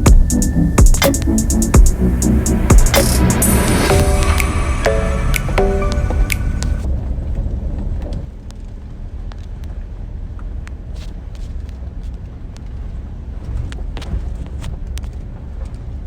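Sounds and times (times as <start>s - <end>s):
car rumbling on unpaved road: 6.5s - 16.0s.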